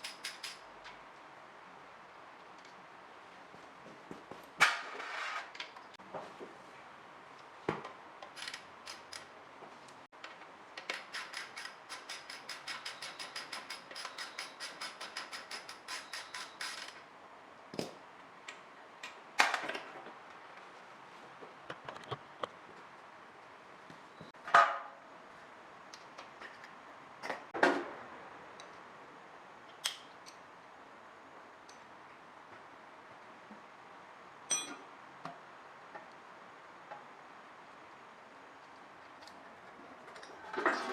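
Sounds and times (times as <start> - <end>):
ratchet wrench clicking: 0.0 - 0.6, 10.9 - 17.0.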